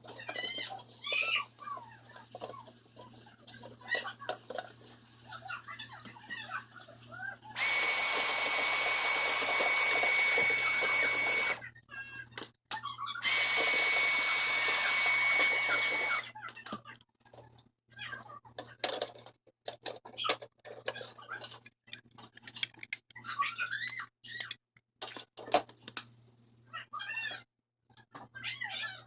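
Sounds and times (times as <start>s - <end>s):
small clicks and knocks: 18.6s - 26.3s.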